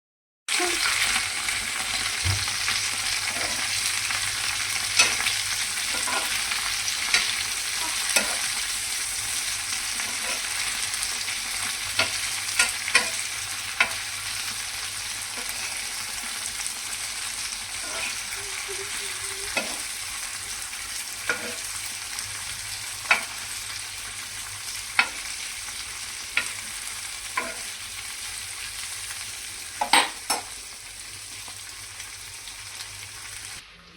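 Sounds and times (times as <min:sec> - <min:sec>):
okra sizzling in oil: 0:00.5 - 0:33.9
spatula scraping and tapping pan: 0:03.2 - 0:08.8, 0:09.9 - 0:16.2, 0:19.5 - 0:19.9, 0:21.2 - 0:21.8, 0:23.0 - 0:23.6, 0:24.8 - 0:25.4, 0:26.3 - 0:27.8, 0:29.8 - 0:30.6.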